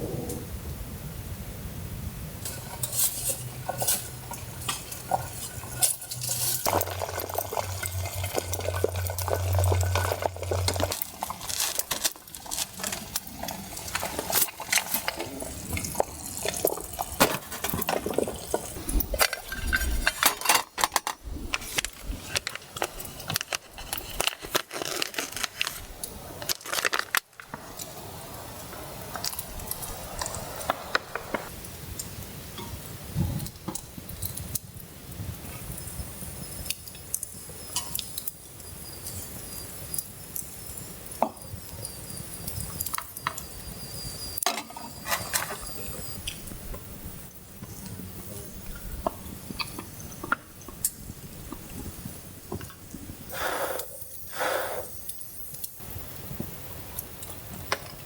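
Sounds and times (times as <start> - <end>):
metal cookware clinking: 2.5 - 10.8, 16.3 - 21.2
liquid sounds: 2.5 - 25.8.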